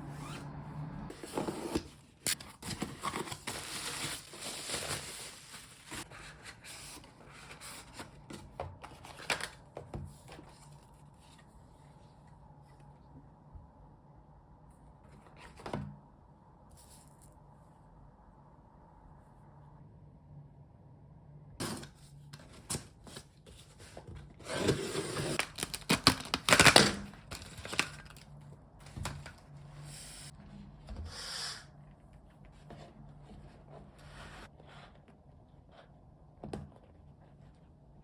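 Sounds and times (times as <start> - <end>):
faint steady hum: 0.0 - 25.4.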